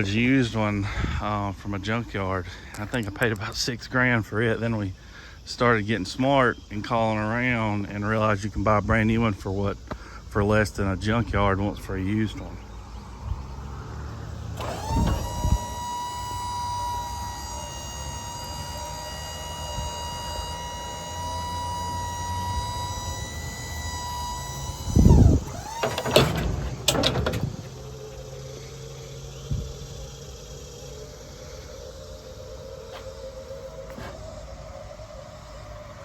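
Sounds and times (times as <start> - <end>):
electric motor whining: 12.1 - 36.0
clunks: 14.4 - 28.4.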